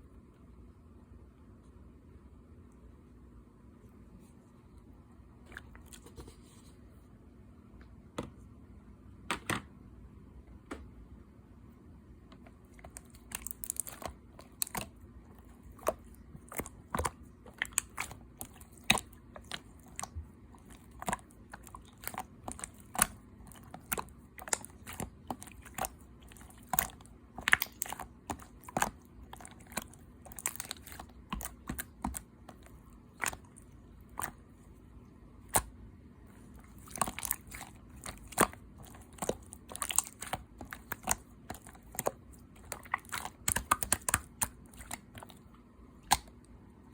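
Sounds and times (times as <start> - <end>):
slime squished clicking and popping: 12.8 - 15.0, 15.6 - 34.4, 36.7 - 45.3, 46.0 - 46.4.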